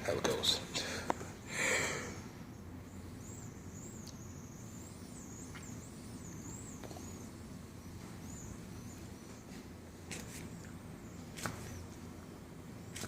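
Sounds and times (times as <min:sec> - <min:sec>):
bird singing: 0:00.0 - 0:13.0
steady low hum: 0:00.0 - 0:13.0
soft ticks: 0:04.0 - 0:04.2.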